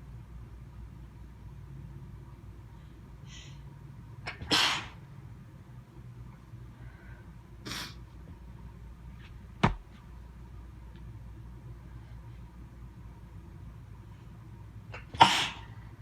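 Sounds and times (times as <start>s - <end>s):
person sneezing: 4.3s - 5.0s, 15.0s - 15.7s.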